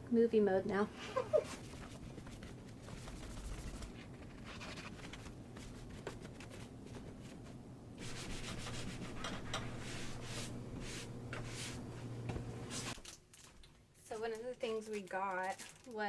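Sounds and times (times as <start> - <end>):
steady low hum: 0.0 - 13.0
rubbing and wiping a surface: 1.0 - 13.0.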